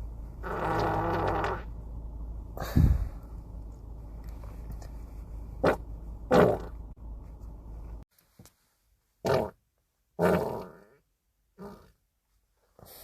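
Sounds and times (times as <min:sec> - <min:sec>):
wet farts: 0:00.4 - 0:01.6.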